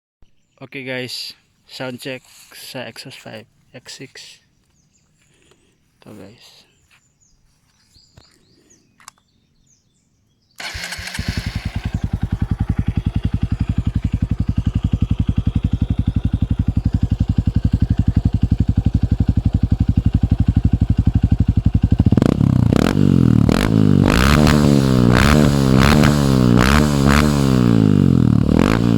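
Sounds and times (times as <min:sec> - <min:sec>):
faint clicks: 0:09.0 - 0:09.3
motorcycle engine idling and revving: 0:10.6 - 0:28.9.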